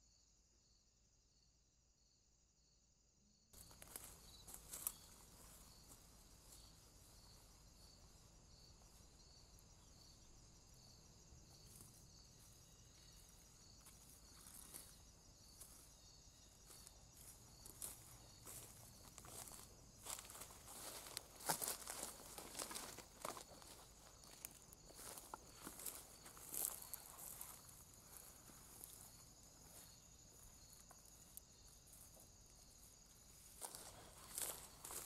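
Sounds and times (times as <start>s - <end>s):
cricket trill: 0.0s - 35.0s
soft insect chirp: 0.0s - 35.0s.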